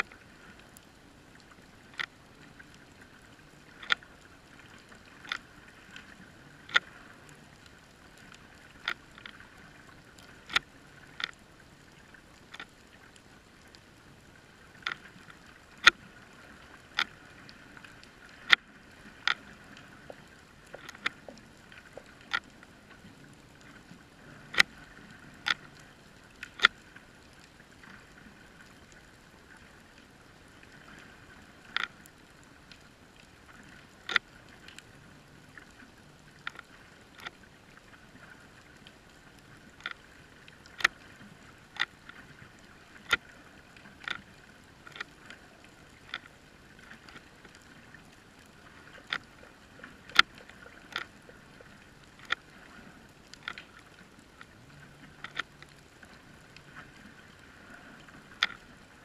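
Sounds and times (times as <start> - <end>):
sharp underwater clicks: 0.0 - 13.9, 14.7 - 27.0, 30.7 - 58.8.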